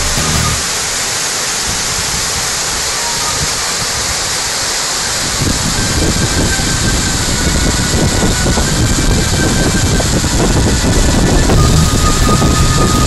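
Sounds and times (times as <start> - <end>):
waterfall rushing: 0.0 - 8.3.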